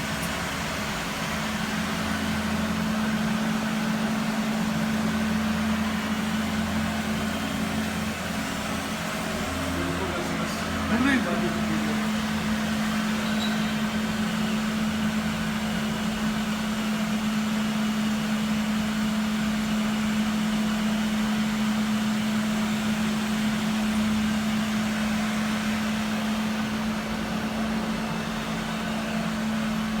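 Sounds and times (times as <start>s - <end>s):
floor scrubber motor hum: 0.0s - 16.4s.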